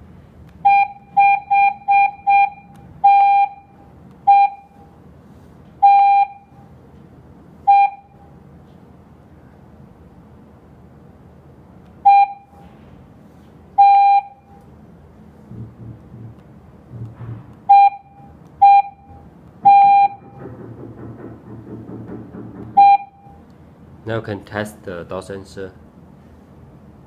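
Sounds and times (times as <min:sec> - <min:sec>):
alarm panel electronic beeps: 0:00.6 - 0:04.8, 0:05.8 - 0:06.6, 0:07.7 - 0:08.2, 0:12.0 - 0:12.6, 0:13.8 - 0:14.6, 0:17.7 - 0:20.4, 0:22.7 - 0:23.4.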